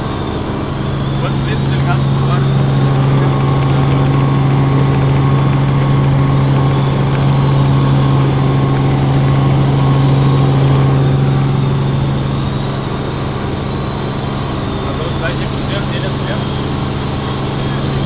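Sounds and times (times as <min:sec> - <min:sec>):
helicopter droning: 0:00.0 - 0:18.0.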